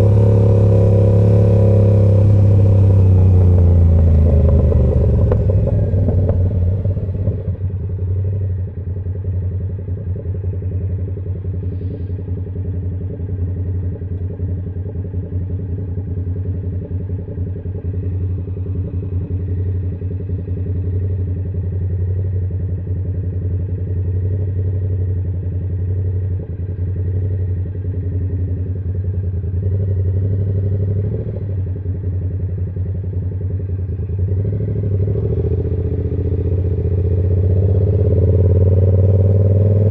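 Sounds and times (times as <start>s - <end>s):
motorcycle engine revving: 0.0s - 8.8s, 27.0s - 39.9s.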